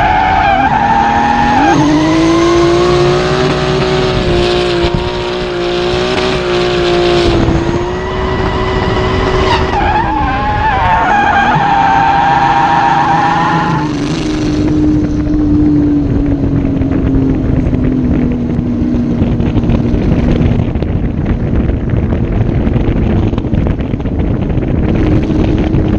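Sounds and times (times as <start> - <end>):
car engine revving high: 0.0 - 20.5
steady rushing noise: 0.0 - 25.9.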